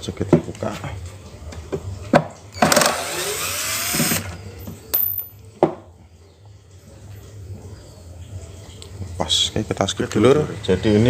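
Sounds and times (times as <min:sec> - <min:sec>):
electric screwdriver whining: 0:02.6 - 0:04.4.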